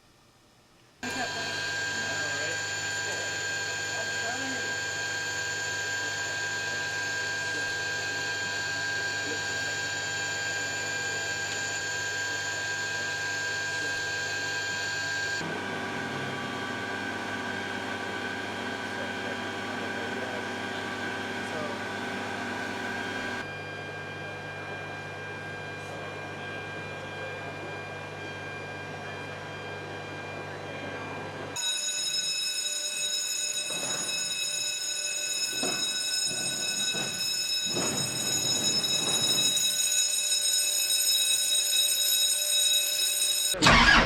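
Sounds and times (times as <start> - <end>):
mechanical hum with whining tones: 0.0 - 31.6.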